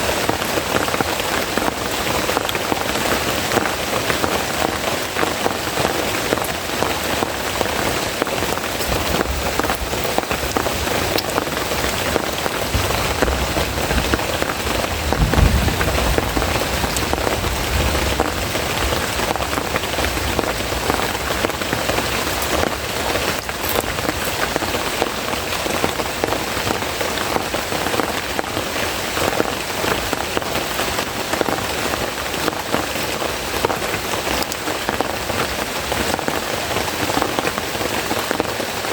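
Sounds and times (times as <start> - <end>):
heavy rain falling: 0.0 - 38.9
low rumble: 8.8 - 21.0.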